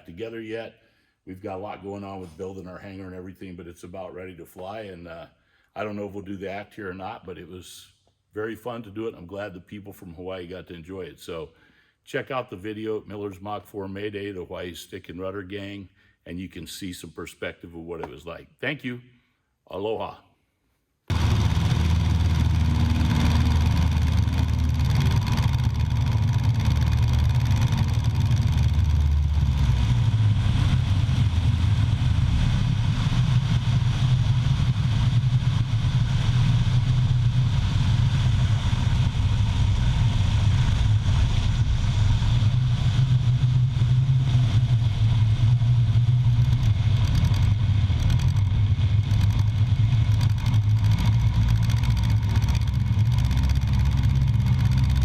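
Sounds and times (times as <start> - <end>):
engine droning: 21.1 - 55.0.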